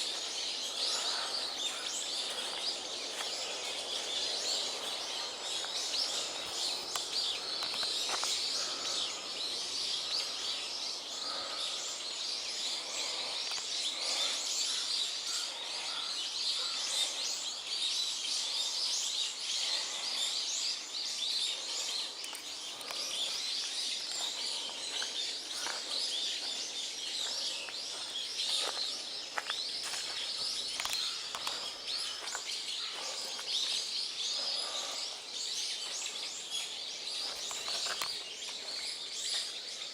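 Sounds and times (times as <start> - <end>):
small birds chirping: 0.0 - 39.9.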